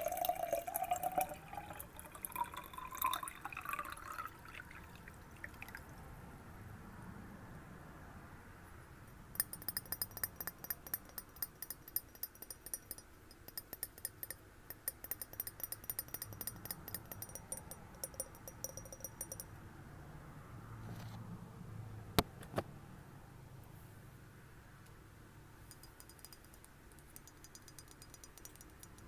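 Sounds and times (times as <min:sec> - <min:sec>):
tapping on glass: 0:09.4 - 0:19.5, 0:25.7 - 0:29.0.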